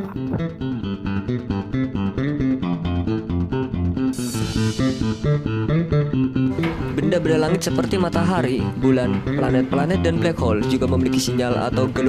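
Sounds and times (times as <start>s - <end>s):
bass guitar line: 0.0s - 12.0s
plucked guitar: 0.0s - 12.0s
steady beat: 2.8s - 12.0s
cymbal swell: 4.2s - 5.5s.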